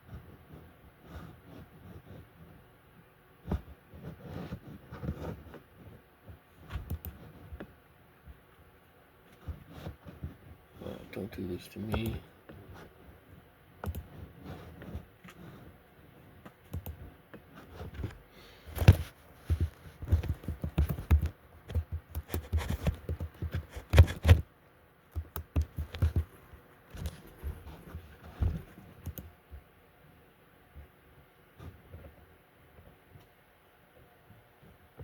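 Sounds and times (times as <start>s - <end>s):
computer keyboard typing: 6.8s - 7.2s, 13.8s - 14.1s, 16.7s - 17.0s, 20.1s - 24.4s, 25.1s - 26.3s, 29.0s - 29.3s.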